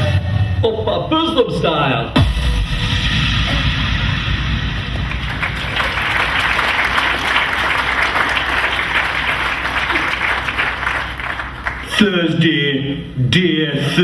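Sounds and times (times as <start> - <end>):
audience applauding: 4.8 - 12.0.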